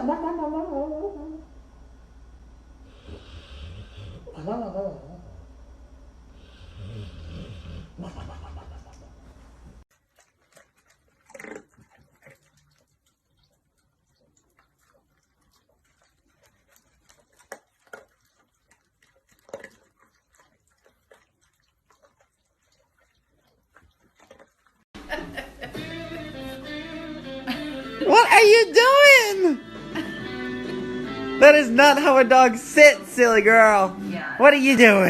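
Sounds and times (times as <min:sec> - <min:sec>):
music: 0:25.0 - 0:34.4.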